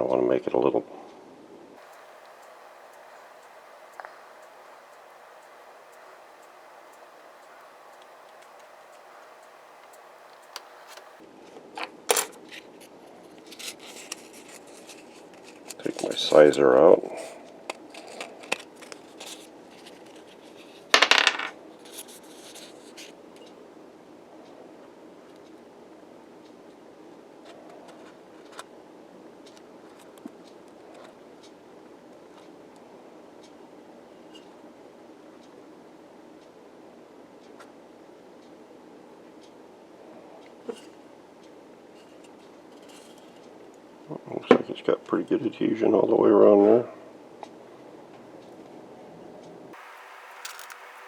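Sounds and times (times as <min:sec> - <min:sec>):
faint room noise with ticks: 0:00.0 - 0:51.0
sharp ticks: 0:01.8 - 0:11.2, 0:49.8 - 0:51.0
steady background noise: 0:01.8 - 0:13.2, 0:23.0 - 0:51.0
light clicks and scrapes of hands: 0:49.8 - 0:51.0.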